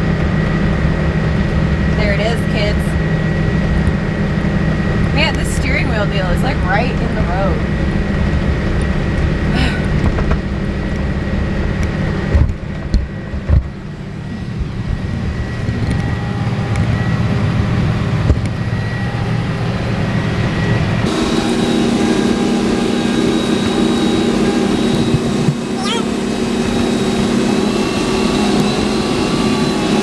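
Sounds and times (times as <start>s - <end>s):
tractor engine running: 0.1s - 11.1s, 13.7s - 30.0s
higher humming tone: 21.0s - 30.0s.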